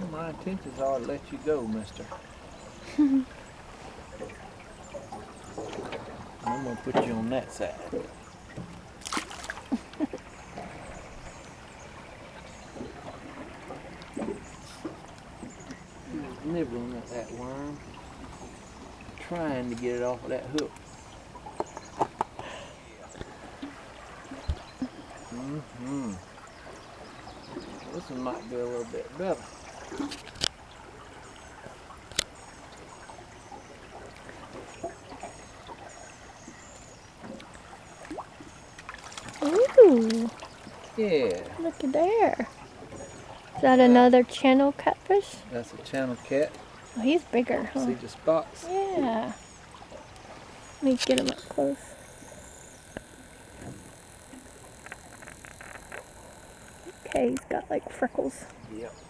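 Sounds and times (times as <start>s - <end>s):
faint bird chirps: 0.3s - 8.6s, 24.0s - 44.0s
fish splashing in water: 2.0s - 16.1s, 28.9s - 43.6s, 49.3s - 57.4s.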